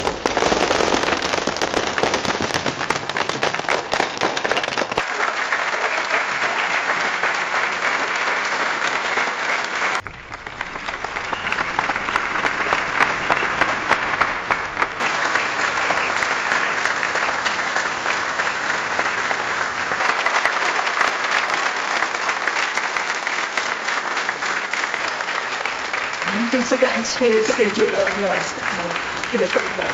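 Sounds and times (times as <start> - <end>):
crowd applause: 0.0 - 29.9.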